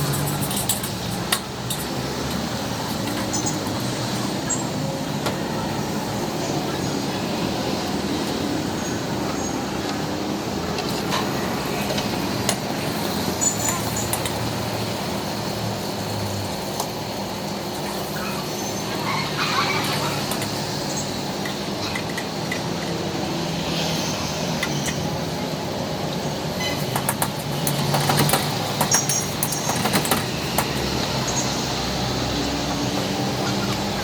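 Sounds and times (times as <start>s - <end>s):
sharp clicks and knocks: 0.0s - 4.3s, 24.5s - 25.1s, 26.6s - 31.4s
traffic: 0.0s - 34.0s.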